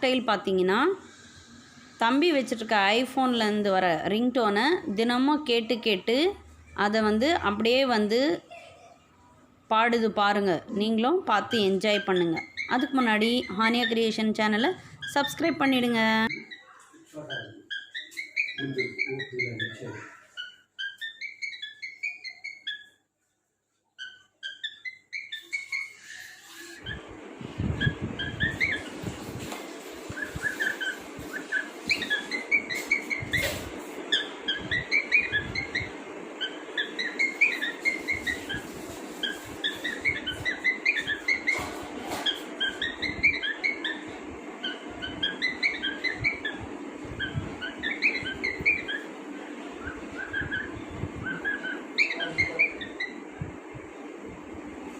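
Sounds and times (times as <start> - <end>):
cockatiel whistling: 12.0 - 14.0, 16.3 - 23.0, 24.0 - 49.1, 49.8 - 53.2.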